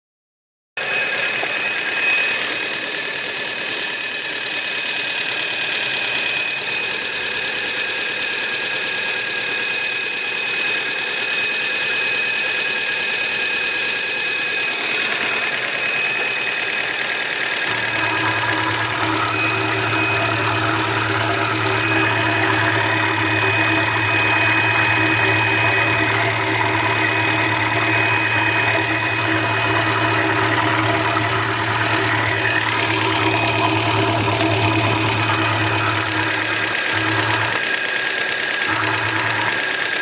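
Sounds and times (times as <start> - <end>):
car high-pitched squeal: 0.8 - 40.0
low hum: 17.7 - 37.7, 38.6 - 39.8.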